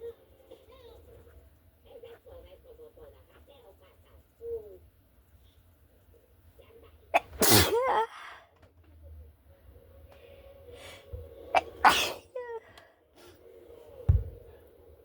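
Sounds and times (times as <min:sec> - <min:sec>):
girl sneezing: 0:07.2 - 0:08.2, 0:11.6 - 0:12.6
short low thump: 0:14.1 - 0:14.4.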